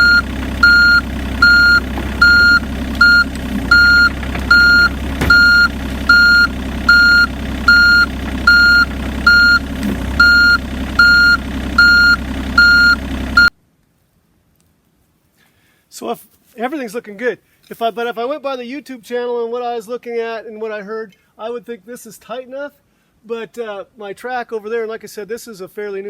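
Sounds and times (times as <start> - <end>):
travel alarm beeping: 0.0 - 9.6, 10.2 - 13.5
diesel engine running: 0.0 - 13.5
metal clunk: 1.4 - 6.7.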